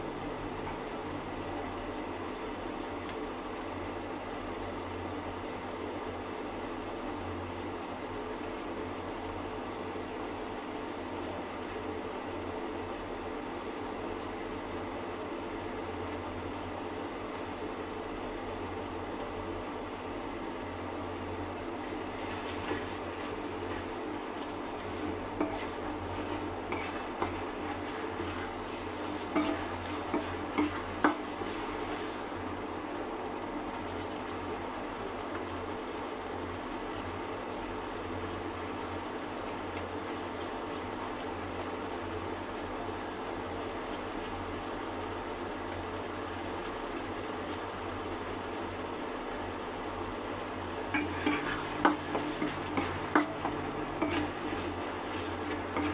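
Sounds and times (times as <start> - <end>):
food sizzling in oil: 20.2 - 39.8, 48.9 - 55.9
metal spoon scraping pot: 25.4 - 26.0, 26.7 - 28.4, 29.3 - 31.2, 51.0 - 55.9.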